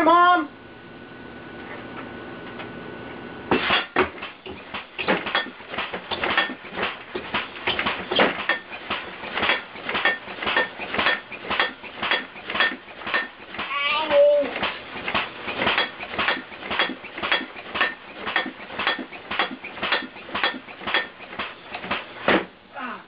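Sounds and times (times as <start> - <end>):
faint steady hum: 0.0 - 4.6
clatter of knocks and rattles: 3.5 - 13.7, 14.5 - 22.5.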